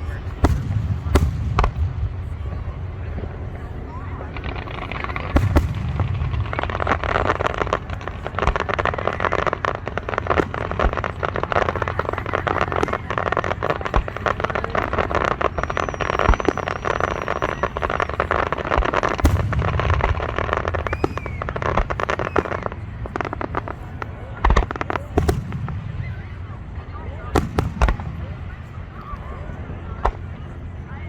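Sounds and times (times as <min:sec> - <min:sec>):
heavy firework boom: 0:00.0 - 0:03.4, 0:04.3 - 0:09.1, 0:18.8 - 0:22.5, 0:24.5 - 0:26.4, 0:27.3 - 0:28.6
fireworks crackling: 0:00.0 - 0:29.4
faint high whistle: 0:15.4 - 0:18.2, 0:20.7 - 0:21.6.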